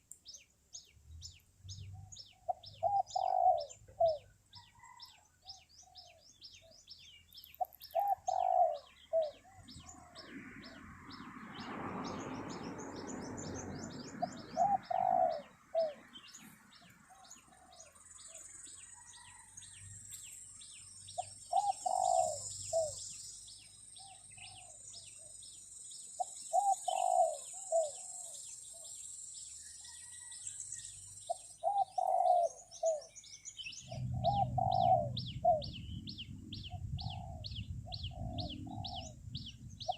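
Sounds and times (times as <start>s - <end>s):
small birds chirping: 0.0s - 39.9s
doves cooing: 1.9s - 6.2s, 7.6s - 10.2s, 14.2s - 18.4s, 21.2s - 23.0s, 26.2s - 28.4s, 31.3s - 33.2s, 33.9s - 39.2s
low rumble of handling noise: 33.8s - 39.9s.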